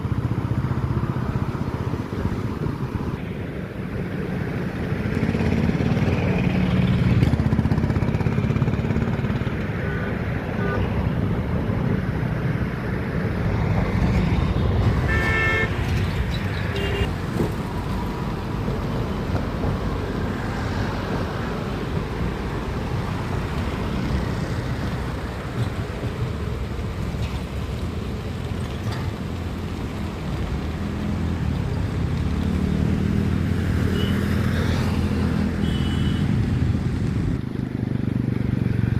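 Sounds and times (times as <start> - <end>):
road traffic engines: 0.0 - 38.9
vehicle horn: 15.0 - 16.0, 16.7 - 17.1, 33.9 - 34.3, 35.6 - 36.3.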